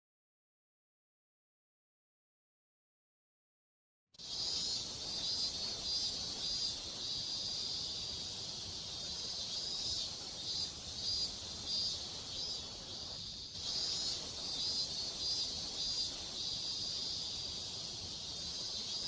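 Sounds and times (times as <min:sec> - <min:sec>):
insects chirping: 0:04.2 - 0:19.0
low steady background hiss: 0:04.2 - 0:19.0.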